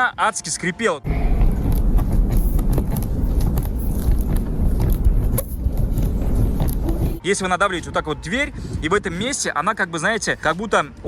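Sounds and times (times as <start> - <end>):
car road rumble: 1.0 - 7.8.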